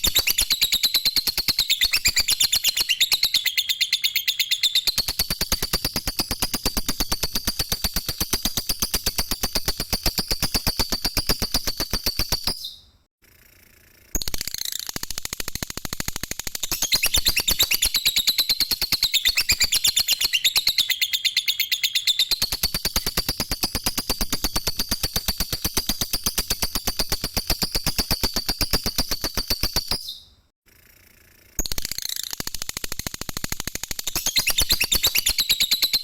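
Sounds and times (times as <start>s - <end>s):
lovebird rattling trill: 0.0s - 12.7s, 14.2s - 30.1s, 31.6s - 36.0s.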